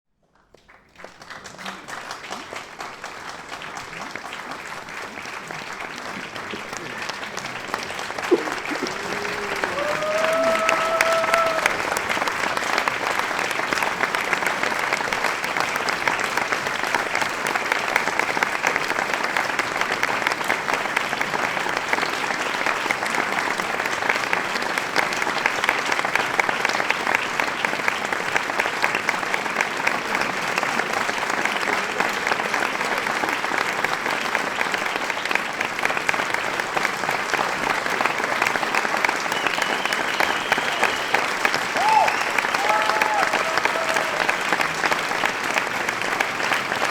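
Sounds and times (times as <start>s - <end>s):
crowd applauding: 0.3s - 46.9s
pitched call from crowd: 8.2s - 12.2s, 39.4s - 44.6s.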